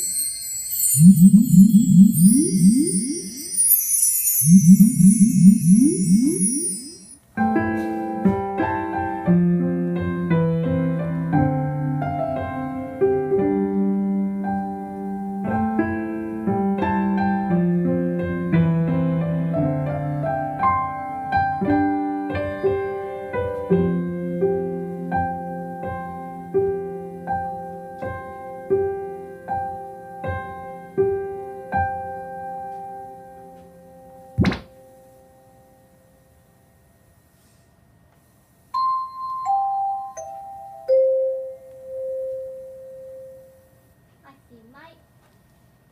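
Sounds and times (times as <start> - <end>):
piano melody: 0.0 - 7.2.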